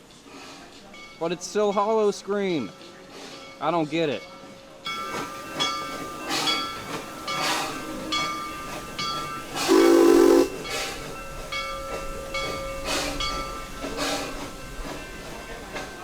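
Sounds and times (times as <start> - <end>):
train passing: 5.2 - 16.0
train whistle blast: 9.7 - 10.7.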